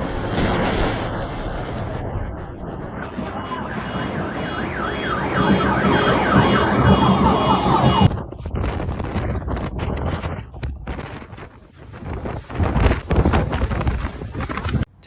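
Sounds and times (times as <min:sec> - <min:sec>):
gusty wind-like noise: 0:00.0 - 0:14.9
steady background noise: 0:02.3 - 0:15.0
electronic alarm siren wailing: 0:03.0 - 0:08.2.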